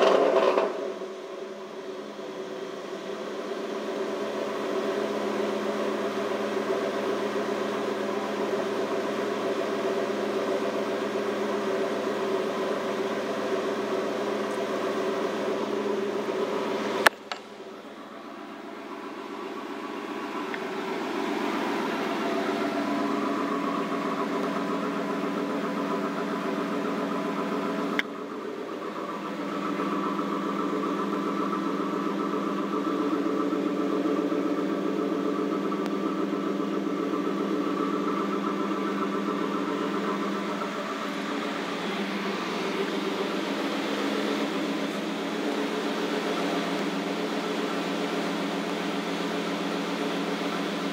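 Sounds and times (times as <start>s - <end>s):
car engine idling: 0.0s - 50.9s.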